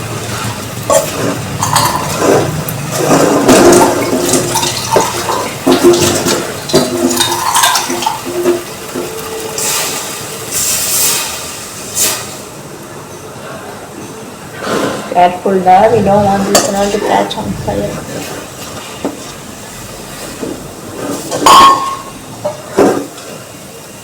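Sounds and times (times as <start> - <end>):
water sloshing and bubbling in pot: 0.0 - 9.8
splashes and knocks: 0.9 - 8.6.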